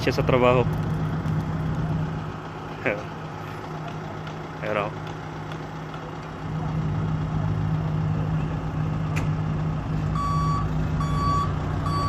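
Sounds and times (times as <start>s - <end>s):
construction vehicle engine running: 0.0s - 12.0s
reversing alarm beeps: 10.2s - 12.0s.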